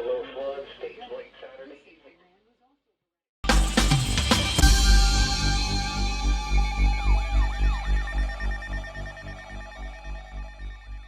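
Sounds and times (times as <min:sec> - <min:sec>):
pulsing bass beat: 0:03.4 - 0:11.0.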